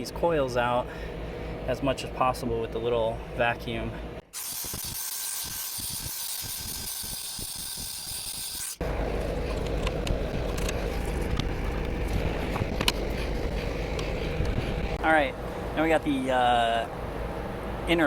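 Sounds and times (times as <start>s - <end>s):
handheld vacuum cleaner hissing: 4.4s - 8.8s
low rumble: 8.8s - 15.8s.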